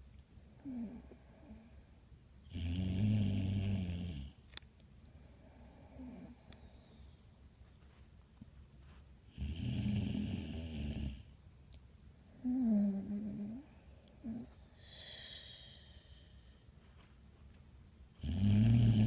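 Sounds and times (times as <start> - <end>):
person snoring: 9.3 - 11.2, 18.2 - 19.0.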